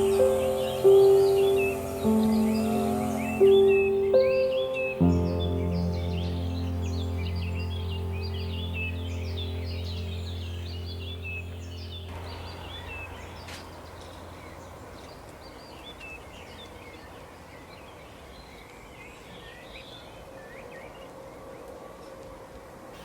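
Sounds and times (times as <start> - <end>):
low music drone: 0.0 - 16.0
forest ambience hiss: 0.0 - 23.0
songbirds chirping: 0.0 - 23.0.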